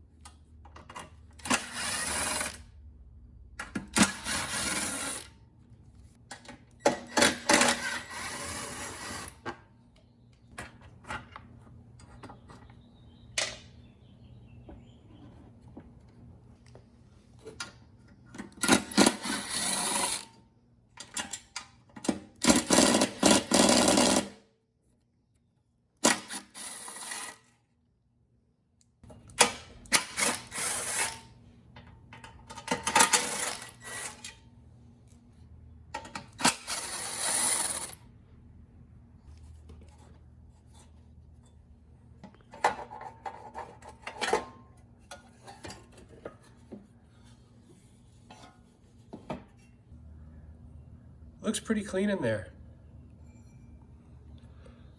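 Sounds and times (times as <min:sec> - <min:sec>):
power tool driving fasteners: 0:01.4 - 0:02.6, 0:04.0 - 0:05.3, 0:18.6 - 0:20.3, 0:22.1 - 0:24.4, 0:26.0 - 0:27.6, 0:29.4 - 0:31.3, 0:32.8 - 0:34.3, 0:36.2 - 0:38.0.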